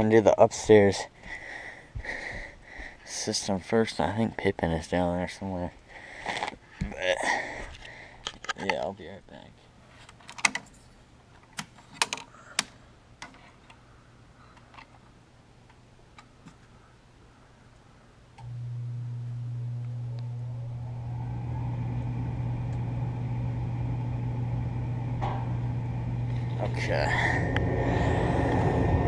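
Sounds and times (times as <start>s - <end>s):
furnace hum: 16.7s - 29.0s.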